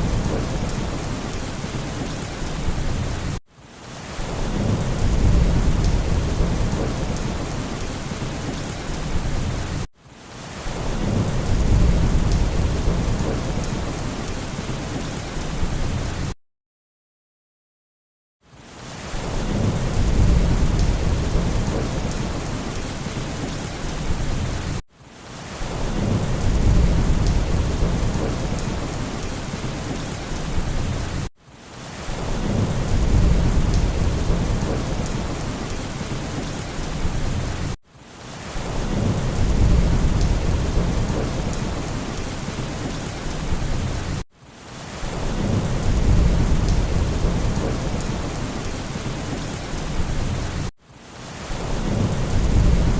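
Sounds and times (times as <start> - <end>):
rolling thunder rumble: 0.0 - 1.7, 4.3 - 9.7, 10.8 - 15.0, 19.2 - 24.8, 25.8 - 31.2, 32.2 - 37.8, 38.7 - 44.2, 45.2 - 48.7, 51.6 - 52.9
heavy rain: 0.0 - 16.4, 18.4 - 52.9.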